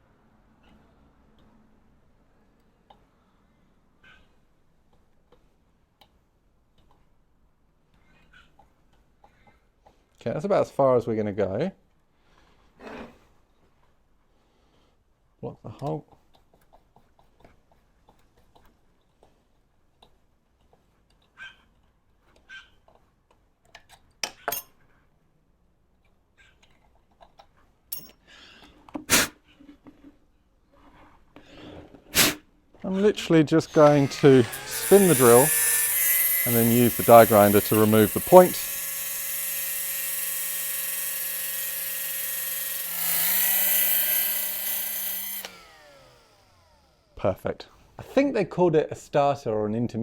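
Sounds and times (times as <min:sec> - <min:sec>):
die grinder grinding metal: 0:33.6 - 0:47.2
power drill motor whine: 0:33.7 - 0:47.2.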